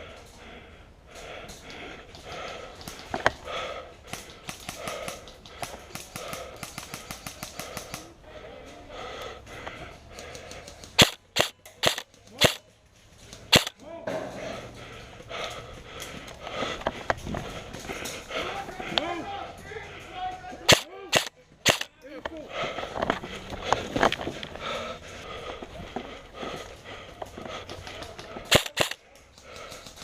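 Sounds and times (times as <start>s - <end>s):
faint clicks: 1.1s - 3.5s, 4.1s - 8.1s, 9.2s - 12.6s
airsoft gun shots: 11.0s - 12.6s, 13.5s - 13.7s, 20.7s - 21.8s, 28.5s - 29.0s.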